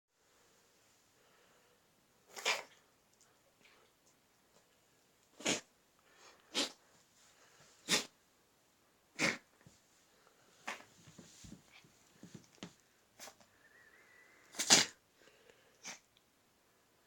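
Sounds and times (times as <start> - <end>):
dog sneezing: 2.3 - 2.8, 5.3 - 5.7, 6.5 - 6.8, 7.8 - 8.2, 9.2 - 9.5, 10.6 - 10.8, 13.2 - 13.4, 14.5 - 15.0, 15.8 - 16.0.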